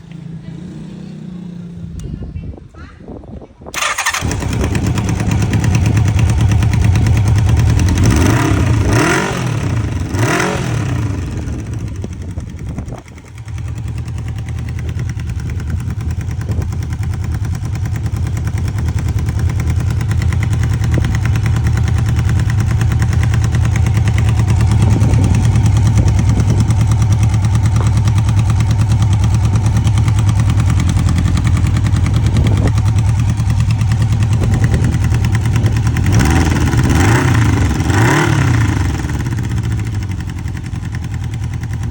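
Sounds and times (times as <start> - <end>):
motorcycle engine revving and idling: 0.0 - 2.6, 3.6 - 41.9.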